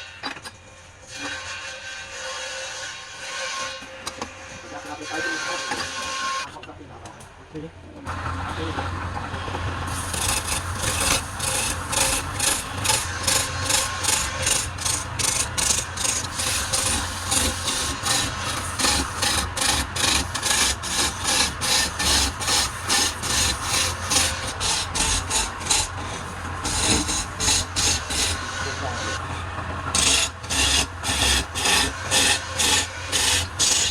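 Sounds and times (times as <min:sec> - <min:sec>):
tool scraping wood: 0:09.9 - 0:33.9.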